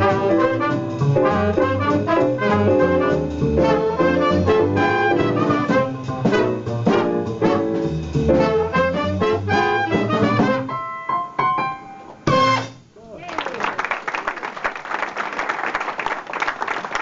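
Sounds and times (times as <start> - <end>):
swing jazz band with brass: 0.0 - 11.4, 12.2 - 12.9.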